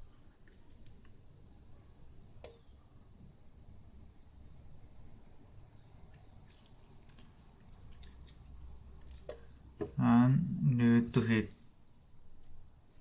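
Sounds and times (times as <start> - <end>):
faint light ticks: 2.4 - 2.6
sharp click: 2.4 - 2.6.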